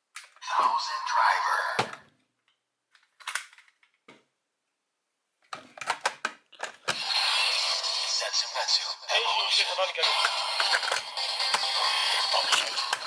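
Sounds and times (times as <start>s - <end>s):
plastic toy parts clicking: 2.9s - 4.0s
toy electronic audio: 7.0s - 13.0s.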